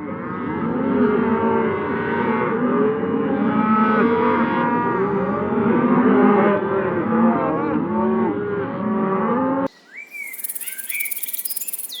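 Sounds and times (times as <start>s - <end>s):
birds chirping: 9.7s - 12.0s
high insect trill: 10.1s - 12.0s.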